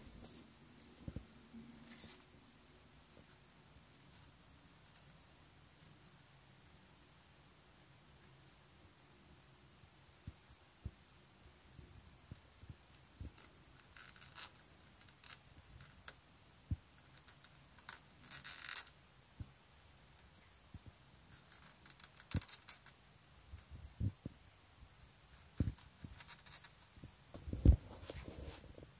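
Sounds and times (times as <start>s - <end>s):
scratching and clicking in wall: 10.9s - 24.4s, 25.3s - 28.9s.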